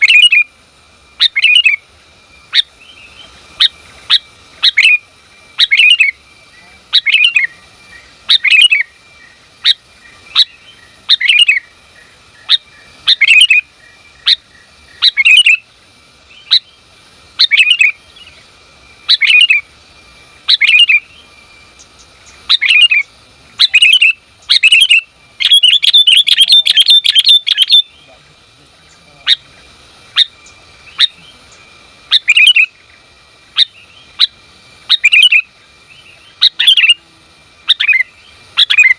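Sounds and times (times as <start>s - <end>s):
bird calling sharp notes: 0.0s - 0.5s, 1.2s - 1.8s, 2.5s - 15.7s, 17.4s - 18.3s, 19.0s - 19.7s, 20.4s - 38.9s
bird chattering: 0.0s - 0.5s, 1.2s - 1.8s, 2.5s - 15.7s, 16.4s - 19.7s, 20.4s - 37.0s, 37.6s - 38.9s.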